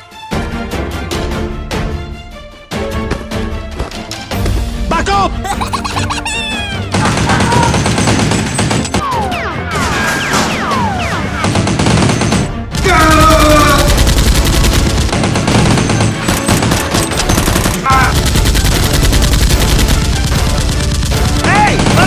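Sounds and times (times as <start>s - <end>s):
rapid automatic gunfire: 6.9s - 9.0s, 11.3s - 22.0s.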